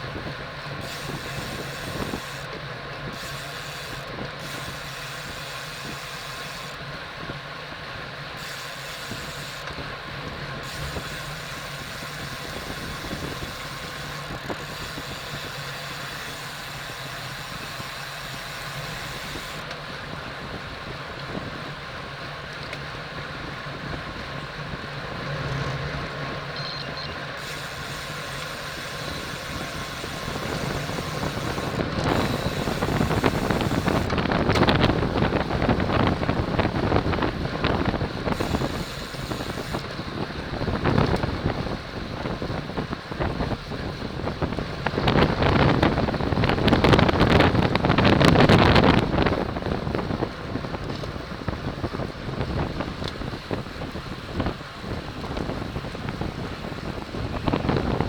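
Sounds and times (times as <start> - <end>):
road and bike noise: 0.0 - 58.0
wind rushing over microphone: 9.0 - 22.2, 27.4 - 58.0.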